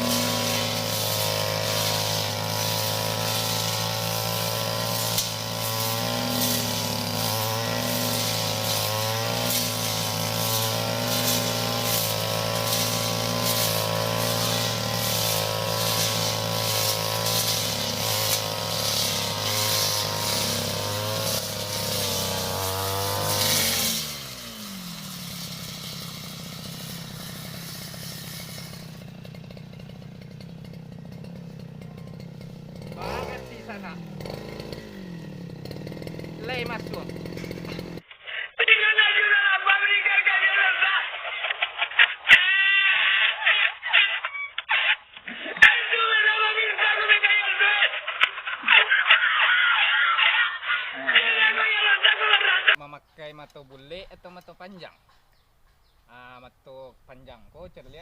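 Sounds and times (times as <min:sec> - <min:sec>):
brush cutter engine cutting grass: 0:00.0 - 0:38.0, 0:44.7 - 0:52.8.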